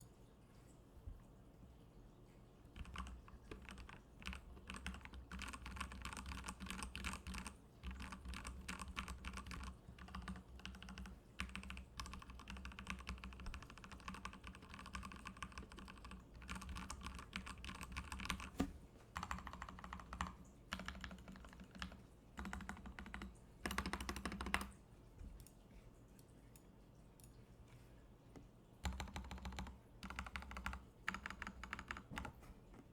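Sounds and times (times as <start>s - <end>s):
mechanical keyboard typing: 2.7s - 24.8s, 28.8s - 32.4s.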